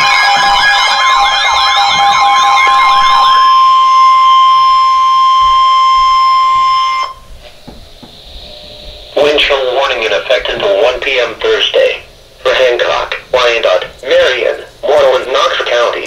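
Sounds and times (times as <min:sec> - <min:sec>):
warbling siren-like alarm: 0:00.0 - 0:07.5, 0:08.1 - 0:12.8
steady high tone: 0:00.0 - 0:16.0.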